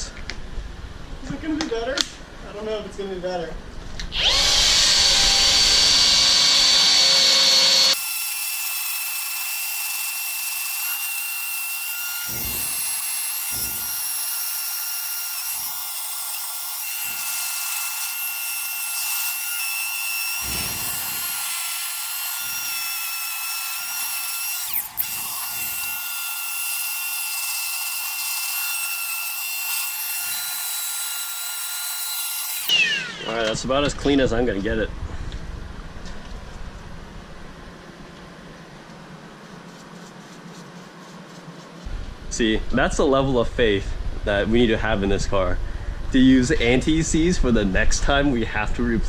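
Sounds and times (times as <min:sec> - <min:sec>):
drill wire brush scouring metal: 0:04.2 - 0:32.7.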